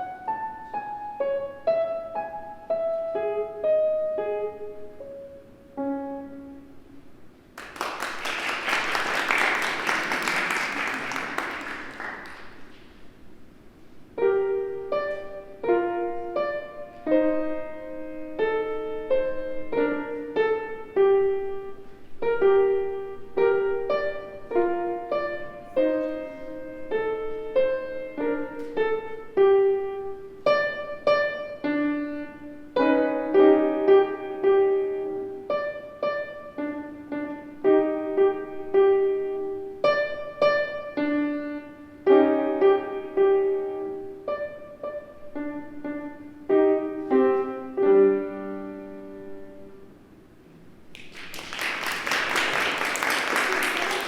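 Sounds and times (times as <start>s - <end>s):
child playing piano: 0.0s - 6.9s, 14.2s - 50.0s.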